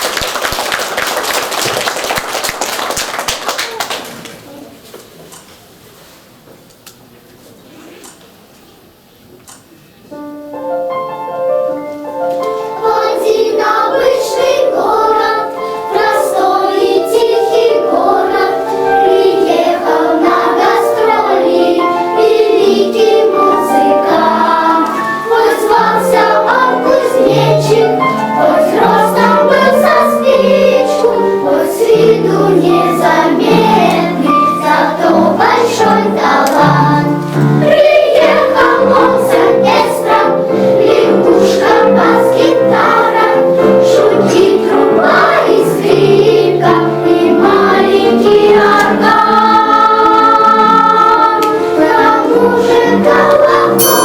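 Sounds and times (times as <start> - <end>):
musical accompaniment: 10.0 - 54.0
children's choir singing: 10.9 - 54.0.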